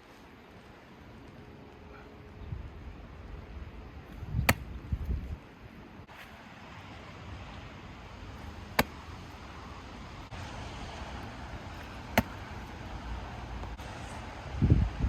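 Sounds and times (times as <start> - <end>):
wind buffeting microphone: 4.1 - 5.5, 13.8 - 15.0
wet football slaps: 4.4 - 4.8, 8.7 - 9.0, 11.9 - 12.6.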